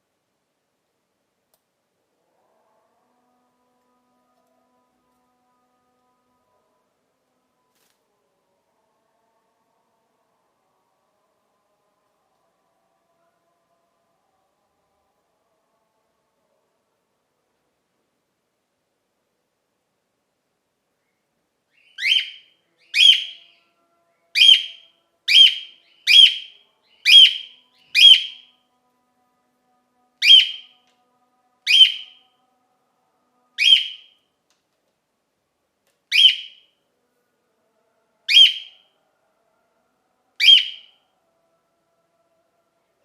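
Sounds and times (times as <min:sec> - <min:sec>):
cockatiel calling: 0:22.0 - 0:22.4, 0:23.0 - 0:23.4, 0:24.4 - 0:26.5, 0:27.1 - 0:28.4, 0:30.2 - 0:30.6, 0:31.7 - 0:32.0, 0:33.6 - 0:34.0, 0:36.1 - 0:36.6, 0:38.3 - 0:38.7, 0:40.4 - 0:40.8.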